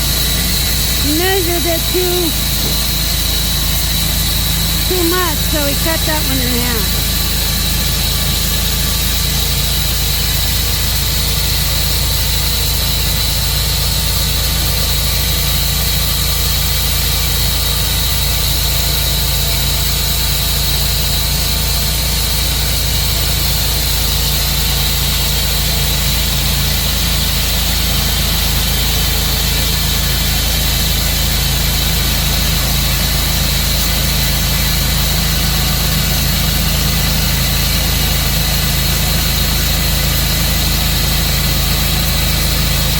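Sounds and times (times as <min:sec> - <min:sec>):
sawmill engine whining: 0:00.0 - 0:16.6.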